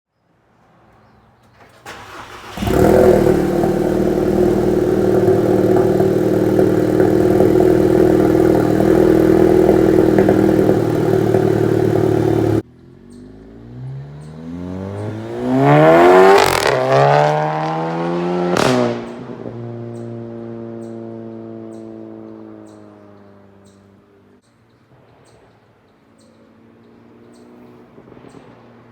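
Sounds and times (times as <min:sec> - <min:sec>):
car engine idling: 0:01.5 - 0:12.6
car engine revving: 0:01.6 - 0:23.6.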